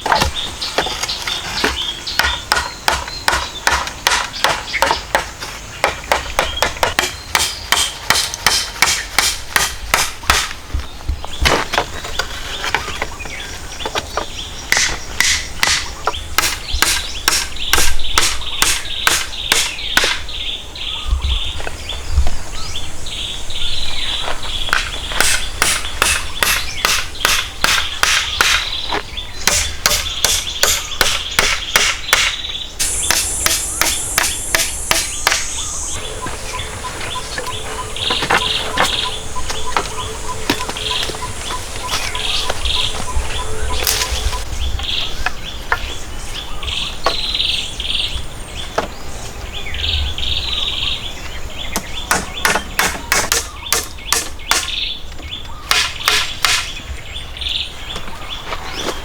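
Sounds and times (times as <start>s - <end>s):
birds chirping: 0.0s - 59.0s
rapid hand tool strikes: 1.7s - 10.6s, 14.7s - 20.2s, 24.7s - 28.7s, 29.4s - 35.6s, 52.1s - 54.8s, 55.7s - 56.7s.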